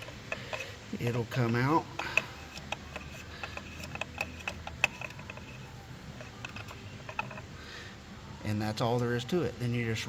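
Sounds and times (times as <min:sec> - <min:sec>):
ratchet wrench clicking: 0:00.0 - 0:07.6.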